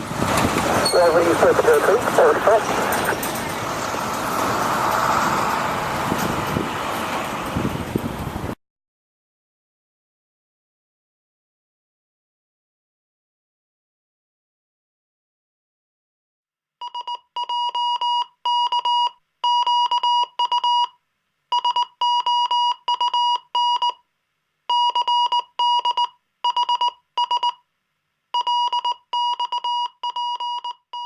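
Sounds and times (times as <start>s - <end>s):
high electronic beeps: 0.8s - 2.6s.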